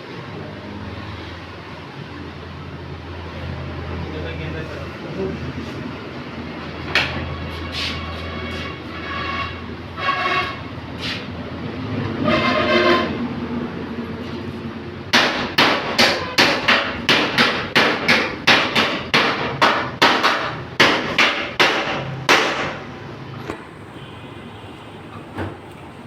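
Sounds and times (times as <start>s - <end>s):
hammer striking sheet metal: 15.1s - 22.9s.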